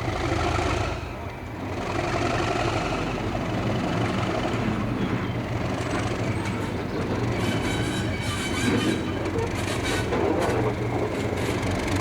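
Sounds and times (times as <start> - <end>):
diesel locomotive engine running: 0.0 - 12.0
high-pitched metallic squeal: 6.3 - 11.7.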